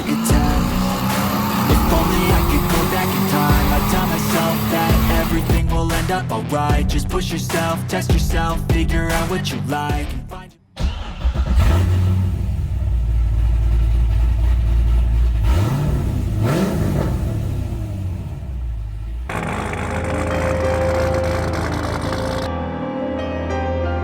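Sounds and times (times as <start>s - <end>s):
car engine rumbling and revving: 0.0s - 5.6s, 10.8s - 22.5s
background music: 0.0s - 11.8s, 19.3s - 24.0s.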